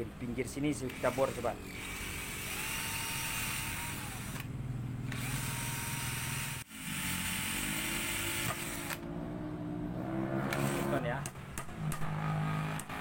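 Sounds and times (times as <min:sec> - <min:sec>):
electric drill whining: 0:00.9 - 0:04.5, 0:05.1 - 0:09.0.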